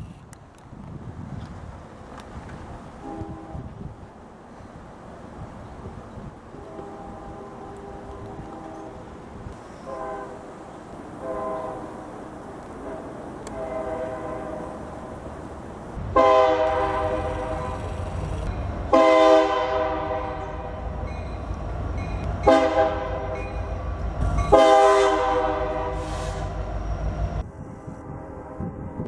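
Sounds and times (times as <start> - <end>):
train rumble: 0.0 - 29.0
train air horn blasts: 3.0 - 3.8, 6.5 - 9.1, 9.8 - 10.5, 11.2 - 12.0, 12.8 - 15.0, 16.0 - 29.0.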